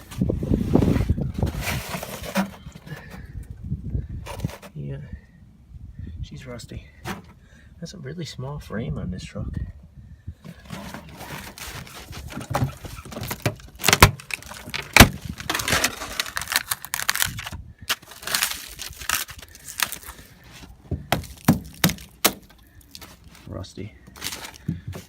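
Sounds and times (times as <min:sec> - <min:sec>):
sharp cracks and knocks: 0:12.4 - 0:20.1, 0:21.0 - 0:23.1.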